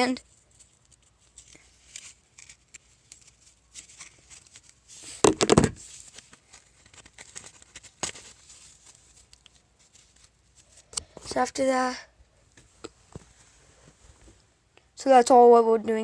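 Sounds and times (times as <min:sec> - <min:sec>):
knocks and rattles: 0:05.2 - 0:05.8
paper rustling and tapping: 0:05.2 - 0:08.4.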